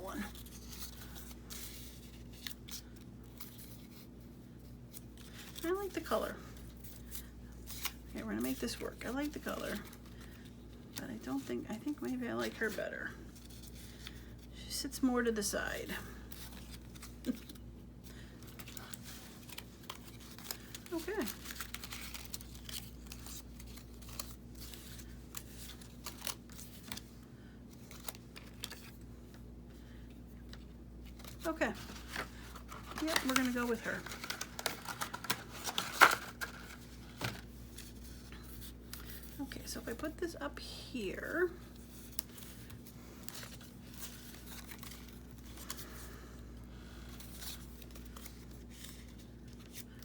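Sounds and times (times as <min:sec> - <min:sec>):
faint steady hum: 0:00.0 - 0:50.0
paper rustling: 0:16.2 - 0:40.0, 0:41.6 - 0:46.2.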